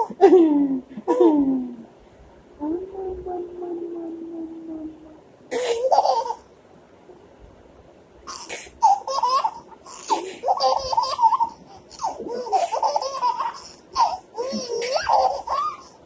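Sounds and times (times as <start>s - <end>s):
baby giggling: 0.0s - 1.7s, 5.5s - 6.4s, 8.3s - 16.0s.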